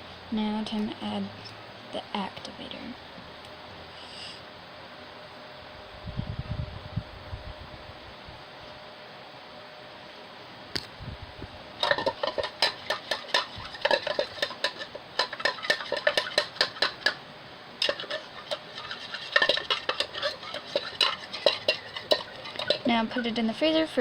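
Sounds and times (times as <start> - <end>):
utensil stirring in a cup: 11.8 - 17.2, 17.8 - 23.6.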